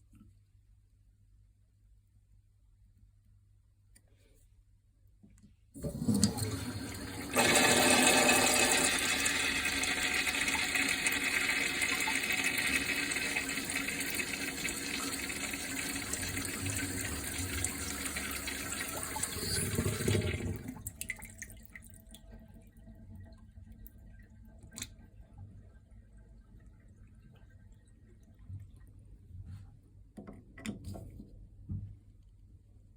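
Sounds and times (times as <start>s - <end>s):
urinal flushing water rush: 5.8s - 21.6s
water trickle and drips: 9.5s - 25.3s.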